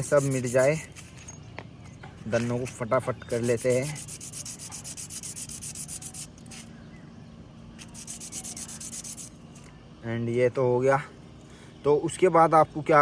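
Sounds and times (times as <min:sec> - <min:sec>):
sandpaper scraping brake pad: 0:00.0 - 0:01.2, 0:02.3 - 0:06.8, 0:07.8 - 0:09.4.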